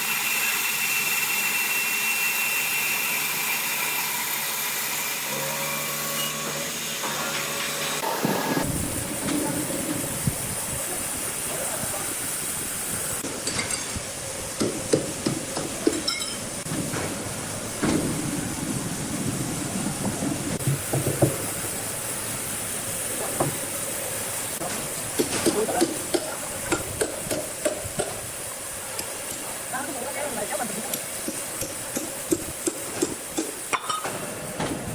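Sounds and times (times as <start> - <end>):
sawmill machinery hissing: 0.0 - 34.9
sharp knocks and clatter: 20.6 - 21.5.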